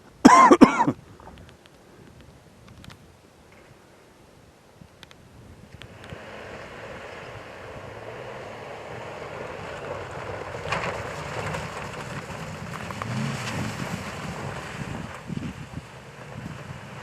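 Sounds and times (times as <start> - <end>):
pickup truck engine revving: 5.9 - 17.0.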